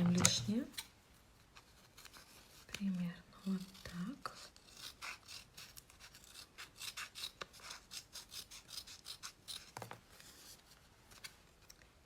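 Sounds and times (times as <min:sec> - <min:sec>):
tape rubbing and scratching: 0:03.6 - 0:11.4.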